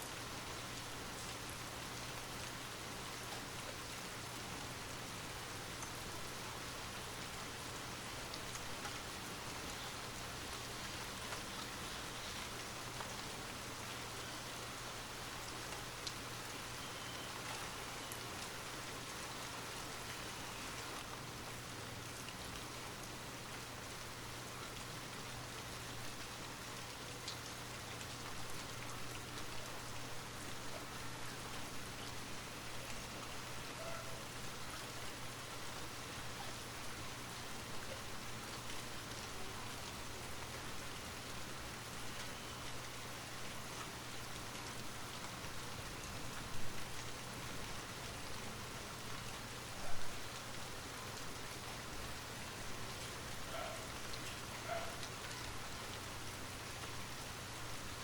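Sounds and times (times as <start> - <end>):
light rain falling: 0.0 - 58.0.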